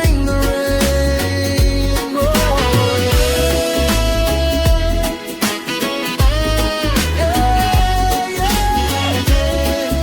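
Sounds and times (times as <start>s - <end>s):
drums: 0.0s - 10.0s
heavy bass line: 0.0s - 10.0s
lead melody holding long notes: 2.0s - 10.0s.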